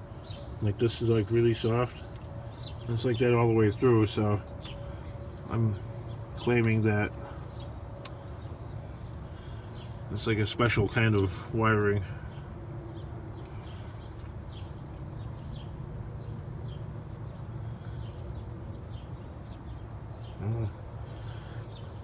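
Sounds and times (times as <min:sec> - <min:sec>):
steady low hum: 0:00.0 - 0:22.0
man's voice murmuring: 0:20.4 - 0:20.8.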